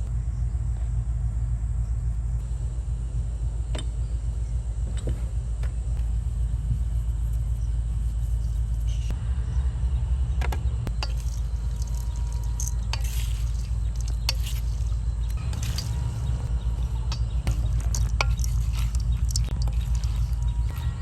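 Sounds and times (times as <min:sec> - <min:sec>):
low rumble: 0:05.9 - 0:21.0
light clicks and clinks: 0:10.9 - 0:21.0.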